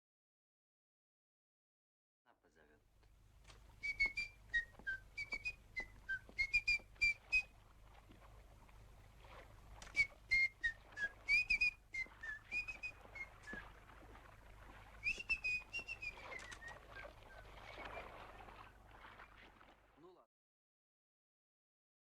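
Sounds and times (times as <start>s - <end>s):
man whistling a tune: 3.8s - 7.5s, 9.9s - 13.6s, 15.0s - 18.1s.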